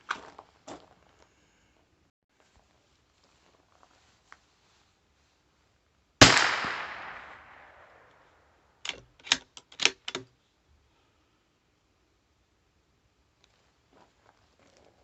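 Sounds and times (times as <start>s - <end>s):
rifle shot echoing: 6.2s - 8.2s.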